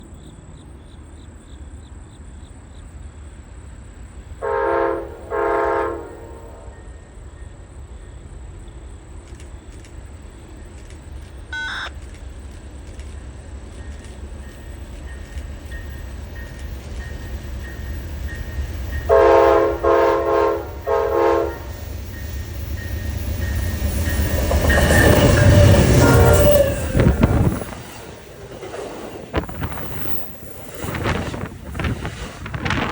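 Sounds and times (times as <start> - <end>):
train engine and wheels: 0.0 - 32.9
train air horn blasts: 4.4 - 6.9, 19.1 - 21.9, 25.6 - 27.6
wheels clattering on rails: 9.2 - 20.8, 21.6 - 32.9.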